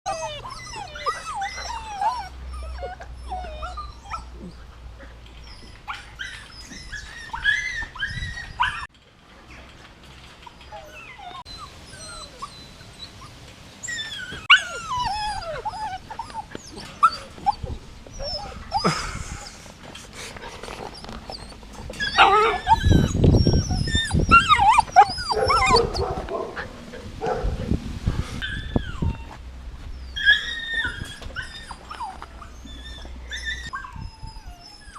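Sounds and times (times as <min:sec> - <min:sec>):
puppies whining and yipping: 0:00.1 - 0:08.9, 0:10.4 - 0:19.6, 0:20.6 - 0:26.3, 0:28.4 - 0:34.9.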